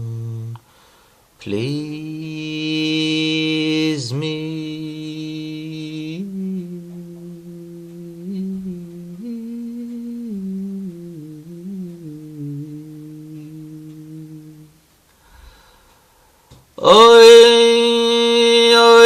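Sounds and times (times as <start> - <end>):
man humming a tune: 0.0 - 0.7, 1.5 - 14.8.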